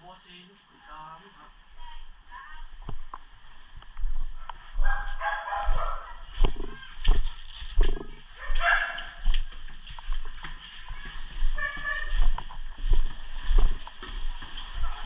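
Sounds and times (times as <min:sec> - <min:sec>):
dog barking: 0:04.8 - 0:06.4, 0:08.4 - 0:09.3.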